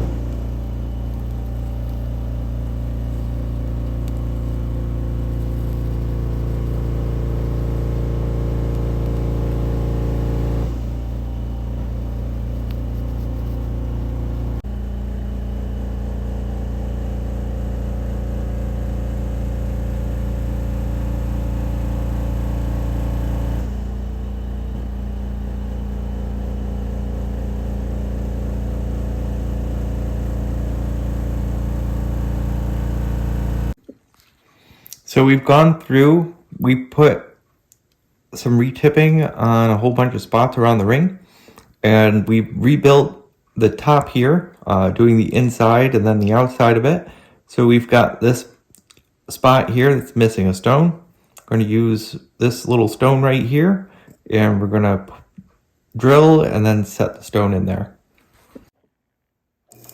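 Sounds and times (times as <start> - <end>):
mechanical hum with tones: 0.0 - 33.8.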